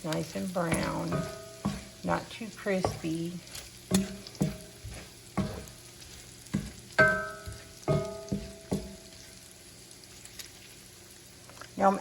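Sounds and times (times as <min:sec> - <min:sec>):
bacon sizzling: 0:00.0 - 0:12.0
metal utensil knocking on skillet: 0:00.6 - 0:02.2, 0:02.8 - 0:05.8, 0:06.5 - 0:09.1.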